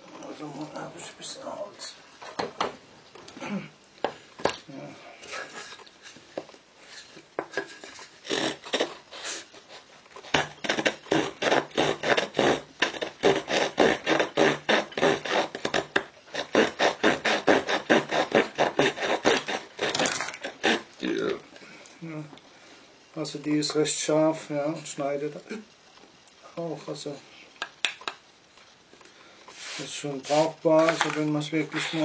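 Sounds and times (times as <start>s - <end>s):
saw rasping through wood: 10.3s - 20.9s.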